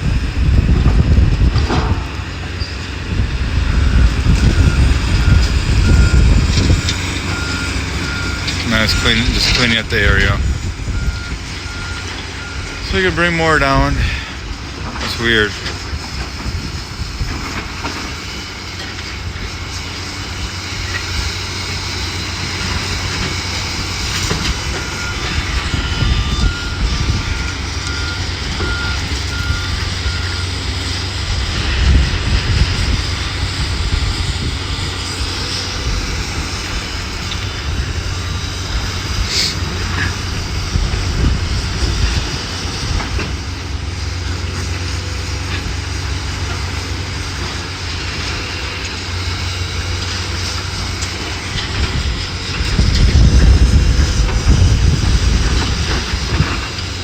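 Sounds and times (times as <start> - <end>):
low rumble: 0.0 - 17.8, 49.8 - 57.0
diesel engine running: 0.0 - 57.0
reversing alarm beeping: 3.6 - 14.4, 22.2 - 30.7.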